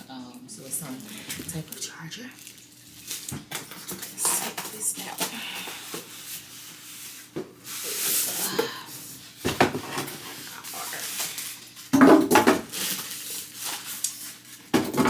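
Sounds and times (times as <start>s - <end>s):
packaging rustling and scraping: 0.9s - 15.0s.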